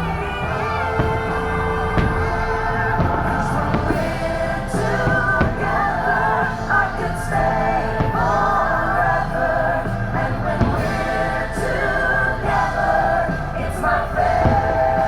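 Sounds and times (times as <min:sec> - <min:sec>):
choir singing with accompaniment: 0:00.0 - 0:15.0.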